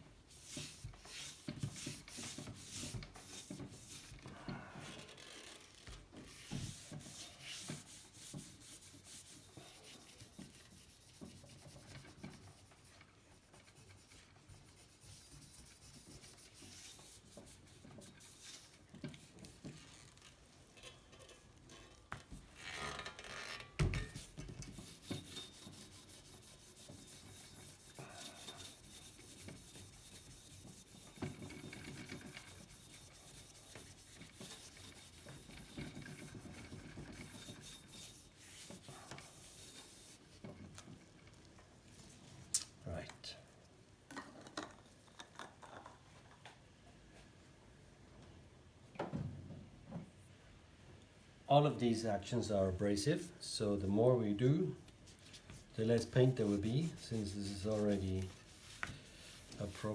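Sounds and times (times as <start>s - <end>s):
cloth rubbing on metal: 0.3s - 4.3s, 4.9s - 20.4s, 22.4s - 41.2s, 54.4s - 59.9s.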